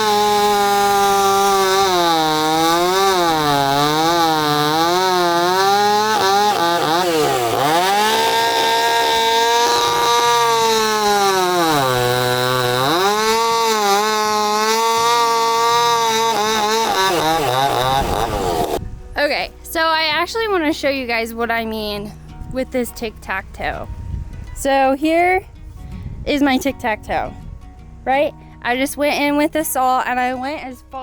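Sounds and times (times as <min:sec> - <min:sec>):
chainsaw cutting wood: 0:00.0 - 0:18.9.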